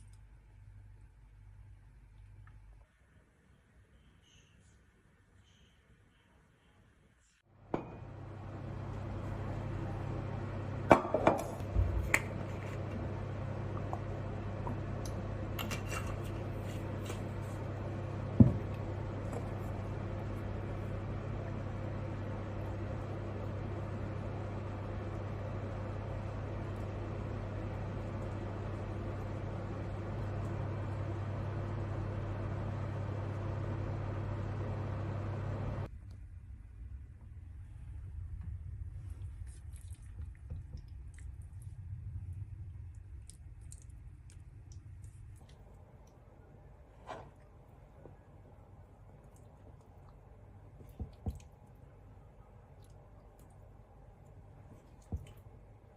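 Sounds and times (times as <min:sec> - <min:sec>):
low hum: 0:05.4 - 0:55.9.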